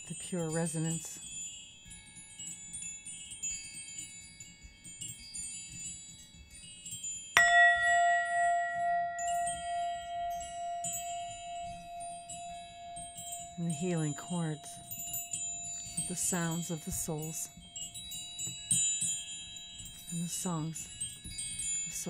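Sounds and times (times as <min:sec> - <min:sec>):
wind chimes tinkling: 0:00.2 - 0:22.0
loud bell tone: 0:07.4 - 0:17.2.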